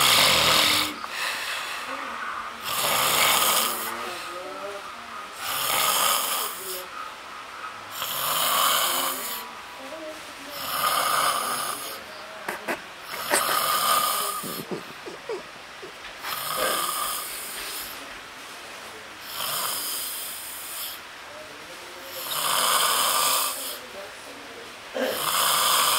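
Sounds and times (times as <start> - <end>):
person snoring: 0.0 - 1.6, 2.6 - 4.4, 5.4 - 6.8, 7.9 - 9.5, 10.6 - 12.1, 13.1 - 15.4, 16.2 - 17.9, 22.2 - 23.8, 25.1 - 25.9
quiet breathing: 0.0 - 12.4, 15.8 - 18.2.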